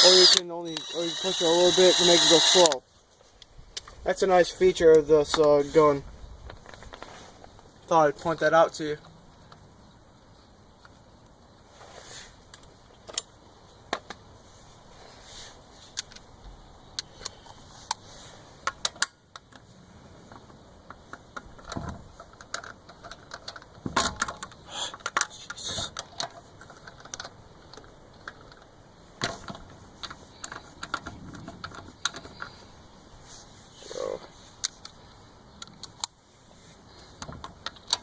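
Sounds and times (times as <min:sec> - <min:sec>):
metal clicks of lug nuts and tools: 0:18.6 - 0:19.7, 0:20.3 - 0:28.7, 0:34.6 - 0:36.2.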